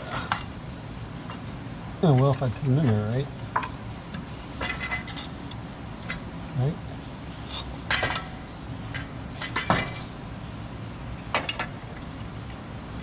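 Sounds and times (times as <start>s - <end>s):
metal tools clinking and clanking: 4.6s - 5.4s, 7.4s - 10.1s, 11.3s - 11.8s.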